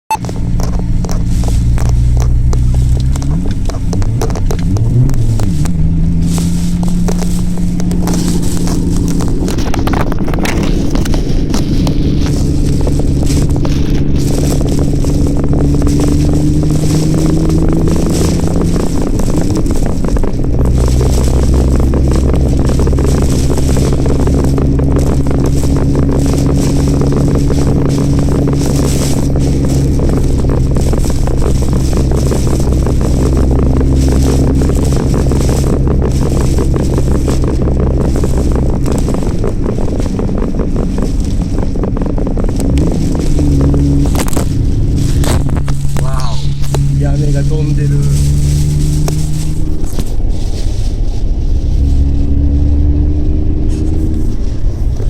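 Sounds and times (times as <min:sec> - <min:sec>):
car engine running while driving: 0:00.0 - 0:55.0
wet road noise: 0:00.0 - 0:55.0
wind and rain hiss: 0:00.5 - 0:55.0.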